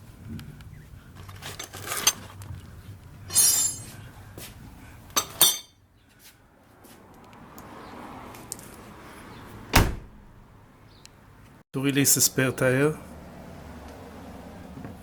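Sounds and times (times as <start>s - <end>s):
metal tools clinking: 1.2s - 2.3s, 3.3s - 4.0s, 5.2s - 5.8s.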